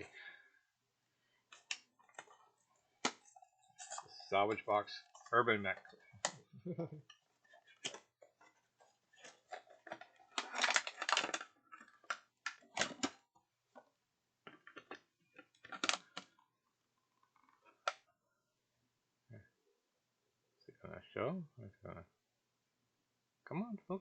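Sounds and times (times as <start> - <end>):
packaging clicks and crinkles: 1.4 - 13.4, 14.5 - 16.4.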